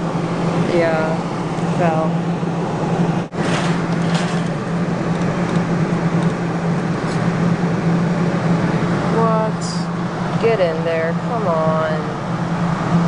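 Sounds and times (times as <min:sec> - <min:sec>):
claw machine mechanical noise: 0:00.0 - 0:09.1
low electrical hum: 0:00.0 - 0:13.0.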